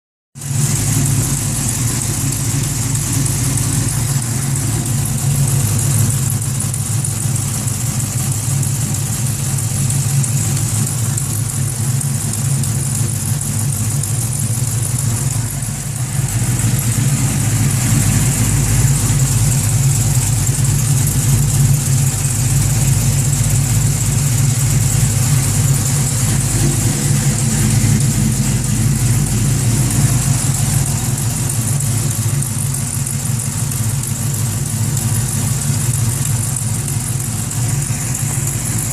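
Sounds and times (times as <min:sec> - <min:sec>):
engine idling: 0:00.4 - 0:38.9.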